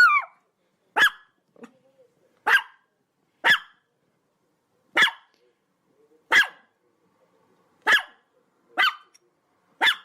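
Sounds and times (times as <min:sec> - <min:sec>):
small dog yapping: 0:05.0 - 0:05.3, 0:07.8 - 0:08.2, 0:09.8 - 0:10.0.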